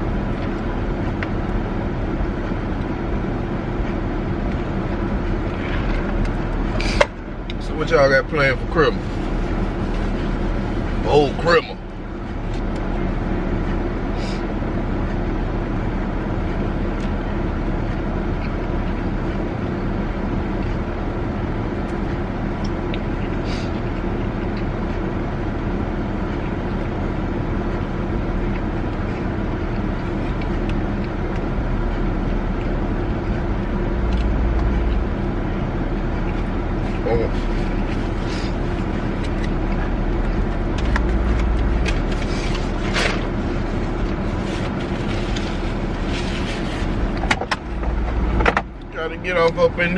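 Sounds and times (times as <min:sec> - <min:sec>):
car interior drone: 0:00.0 - 0:49.9
low rumble: 0:26.4 - 0:49.9.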